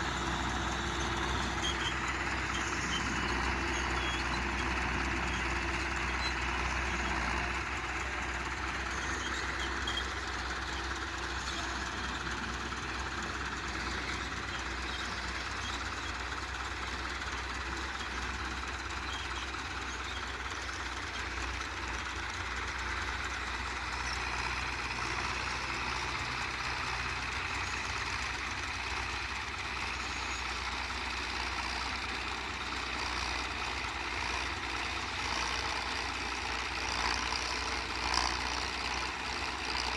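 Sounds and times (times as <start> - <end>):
tractor diesel engine under load: 0.0 - 39.9.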